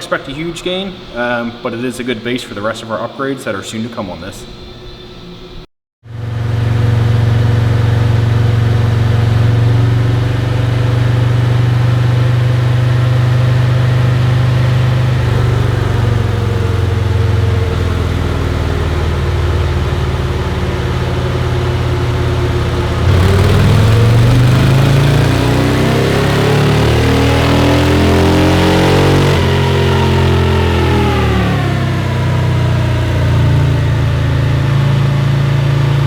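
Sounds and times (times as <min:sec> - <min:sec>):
motorcycle engine revving: 0:06.0 - 0:36.0.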